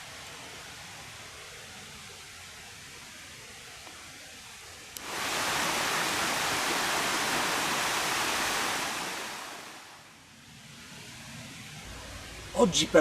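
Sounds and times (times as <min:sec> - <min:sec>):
rushing hiss: 0:05.0 - 0:10.2.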